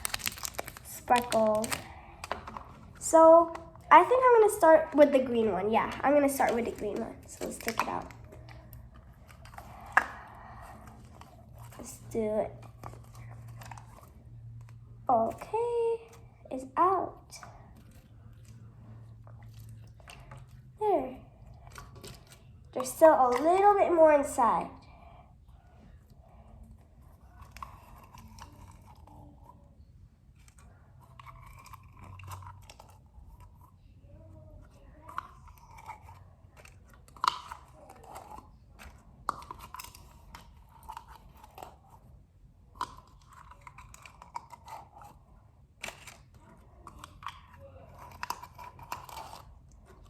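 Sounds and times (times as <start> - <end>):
sharp clicks and crackles: 0.0 - 2.6
slime squelching: 0.0 - 50.0.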